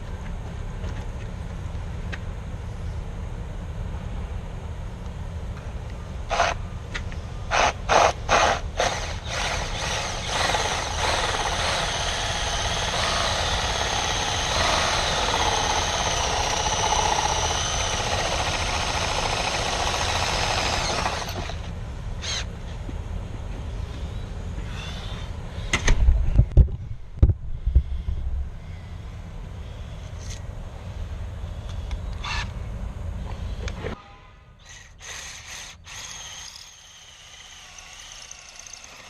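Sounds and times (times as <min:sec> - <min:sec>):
power drill running: 0:07.5 - 0:22.4, 0:34.6 - 0:39.0.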